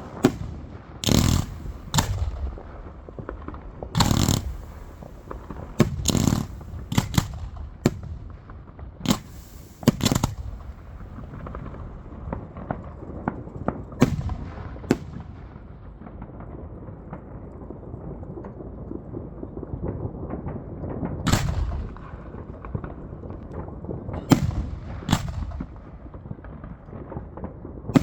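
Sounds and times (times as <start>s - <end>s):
fireworks banging: 0.0s - 16.4s, 21.3s - 28.0s
fireworks crackle and rumble: 0.0s - 28.0s.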